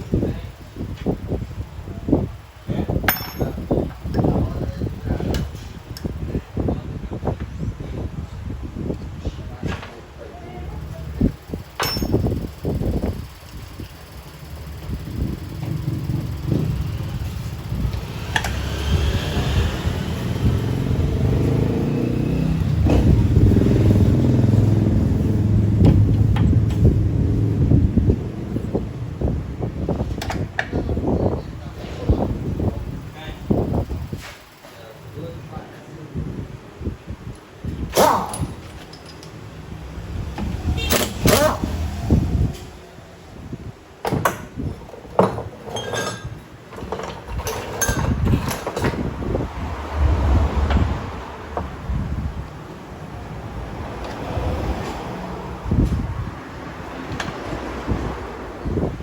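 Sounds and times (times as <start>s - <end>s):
metal tools clinking: 3.0s - 4.3s, 11.6s - 18.6s, 38.0s - 39.4s, 44.1s - 49.0s
motorcycle engine running: 13.9s - 29.6s.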